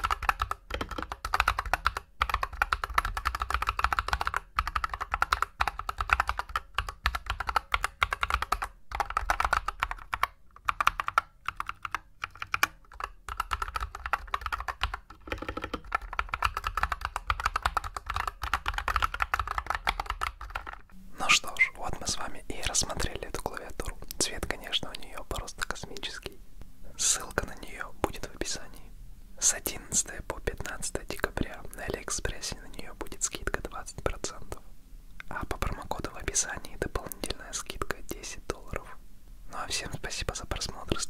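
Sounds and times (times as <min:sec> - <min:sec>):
mechanical keyboard typing: 0:00.0 - 0:20.9.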